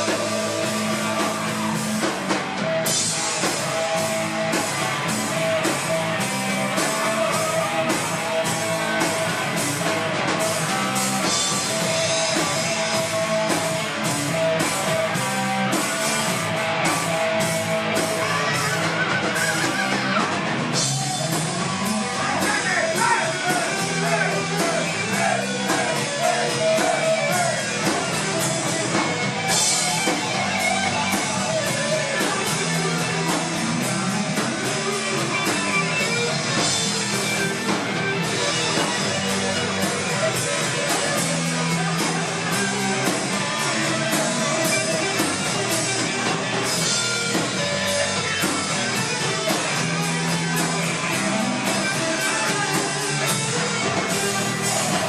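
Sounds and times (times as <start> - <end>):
hard rock band playing: 0.0 - 55.0.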